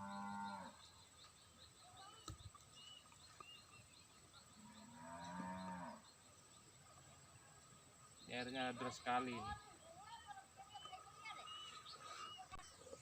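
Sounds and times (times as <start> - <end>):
cow mooing: 0.0 - 0.7, 4.7 - 6.0
faint high chirping: 0.0 - 13.0.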